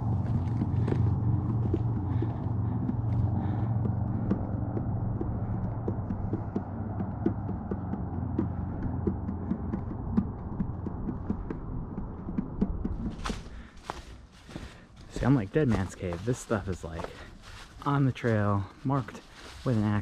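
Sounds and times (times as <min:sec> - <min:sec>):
footsteps on rocky muddy trail: 0:00.0 - 0:06.6, 0:12.8 - 0:20.0
low steady rumble: 0:00.0 - 0:20.0.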